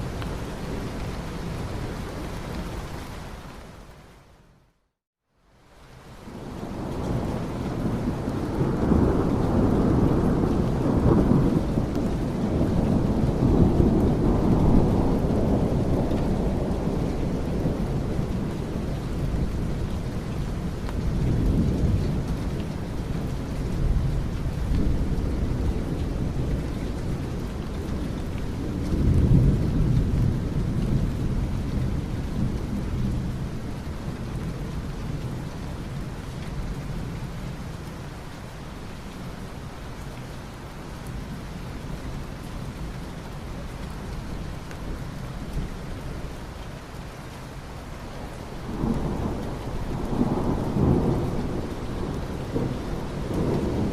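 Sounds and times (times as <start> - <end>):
steady rain: 0.0 - 53.9
rolling thunder: 6.3 - 20.3, 23.7 - 35.4, 48.5 - 53.9.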